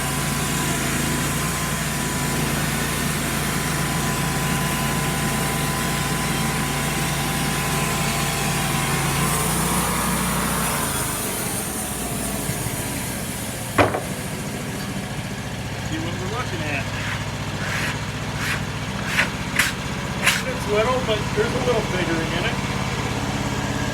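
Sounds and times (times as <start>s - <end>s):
sawmill cutting log: 0.0s - 23.9s
sharp knock: 13.8s - 14.1s.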